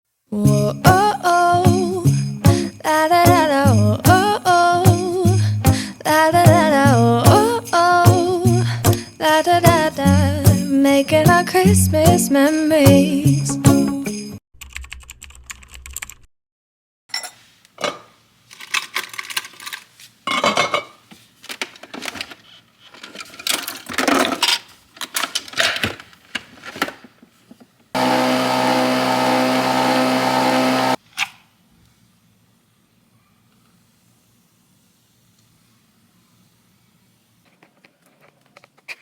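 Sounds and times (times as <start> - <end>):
small objects clicking and knocking: 18.5 - 20.0, 21.4 - 27.1
small electric motor running: 28.0 - 31.0.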